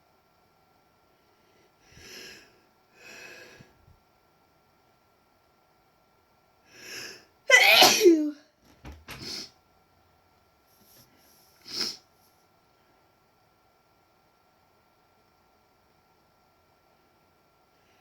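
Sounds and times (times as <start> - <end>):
woman sneezing: 7.5 - 8.4.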